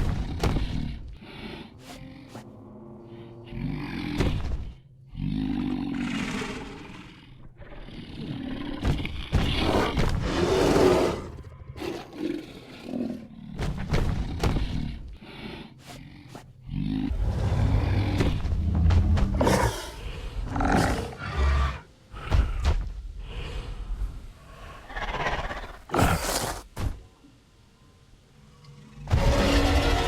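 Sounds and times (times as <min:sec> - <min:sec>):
dinosaur roars: 0:00.0 - 0:13.5, 0:16.0 - 0:22.7, 0:28.8 - 0:30.0
dinosaur grunts: 0:00.0 - 0:23.5.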